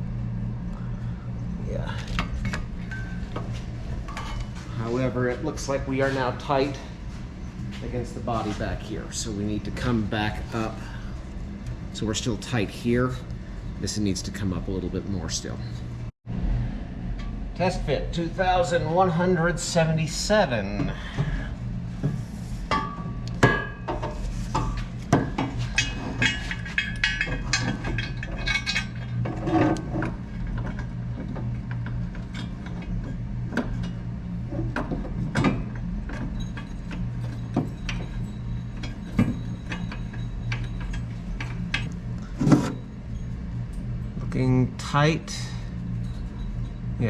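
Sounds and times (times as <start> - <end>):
steady low hum: 0.0 - 47.0
steel pieces and tools clinking: 22.8 - 30.0, 35.5 - 43.4.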